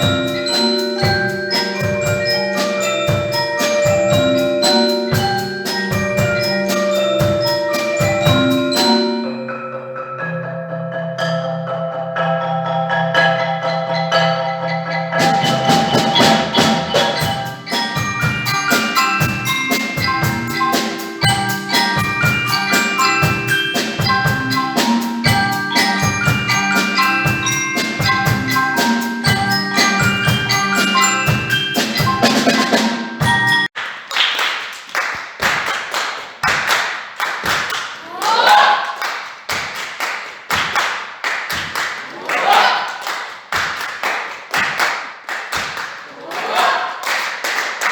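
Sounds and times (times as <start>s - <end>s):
drum strikes: 0.0s - 9.3s, 15.1s - 33.7s
mallet instruments playing a tune: 0.0s - 33.8s.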